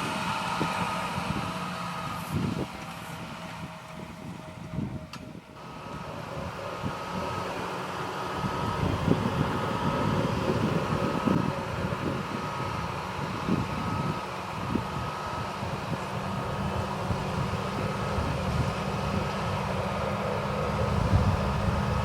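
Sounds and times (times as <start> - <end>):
tractor engine and machinery drone: 0.0 - 22.0
low baler thuds: 20.7 - 22.0.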